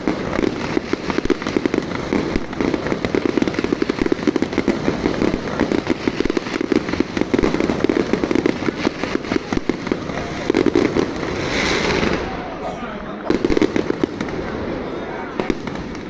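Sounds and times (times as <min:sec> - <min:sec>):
firecrackers going off rapidly: 0:00.0 - 0:16.0.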